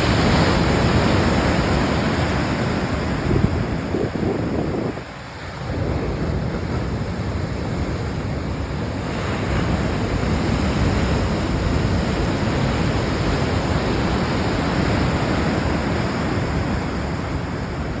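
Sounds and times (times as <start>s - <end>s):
ocean waves breaking: 0.0s - 18.0s.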